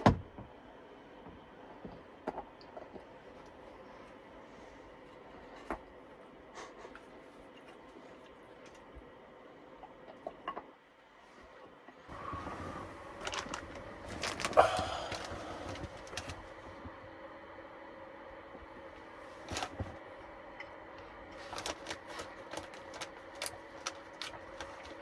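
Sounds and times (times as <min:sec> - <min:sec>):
rustling: 0:12.1 - 0:16.9.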